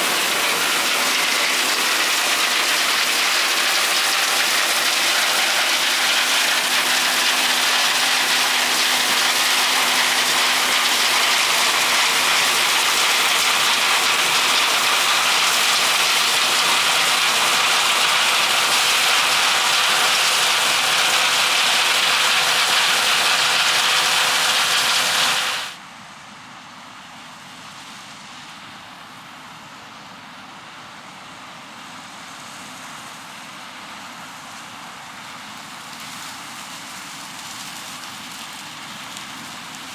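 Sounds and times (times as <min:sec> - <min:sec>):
combine harvester running: 0:00.0 - 0:25.8.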